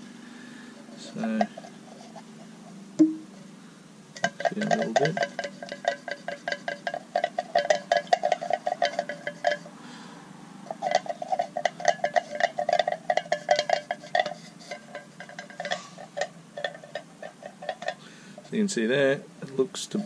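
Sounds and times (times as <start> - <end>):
chopstick clinking in tin can: 4.2 - 9.6.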